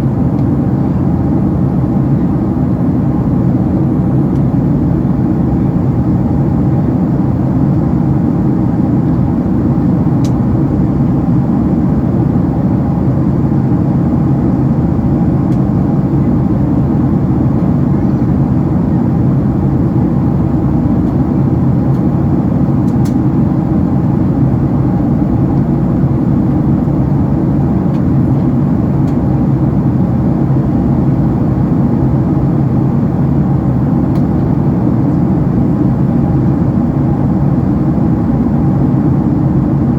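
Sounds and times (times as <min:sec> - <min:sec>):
airplane cabin airflow and engine drone: 0:00.0 - 0:39.9.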